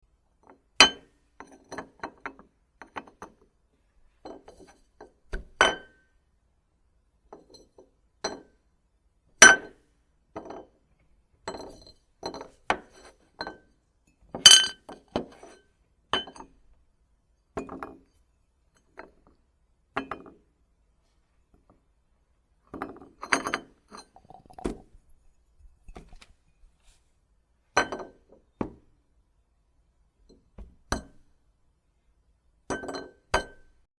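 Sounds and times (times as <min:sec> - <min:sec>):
dishes and glassware clinking: 0:14.4 - 0:15.6, 0:22.7 - 0:26.2, 0:27.8 - 0:28.3, 0:32.7 - 0:33.7.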